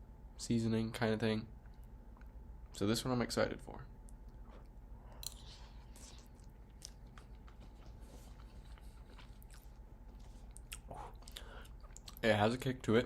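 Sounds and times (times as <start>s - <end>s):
person chewing soft food: 4.1s - 12.2s.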